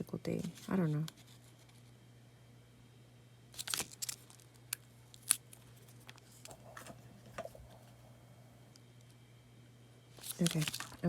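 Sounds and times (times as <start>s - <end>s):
paper rustling and clicking: 3.6s - 7.9s, 10.2s - 11.0s.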